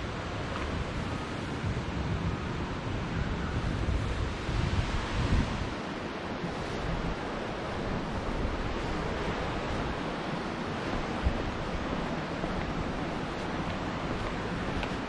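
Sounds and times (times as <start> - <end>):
wind buffeting microphone: 0.0 - 15.0
flowing and falling water: 4.0 - 15.0.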